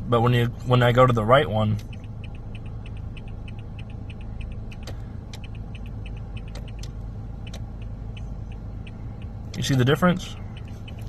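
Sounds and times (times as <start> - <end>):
turn-signal relay ticking rapidly: 0.8 - 11.0.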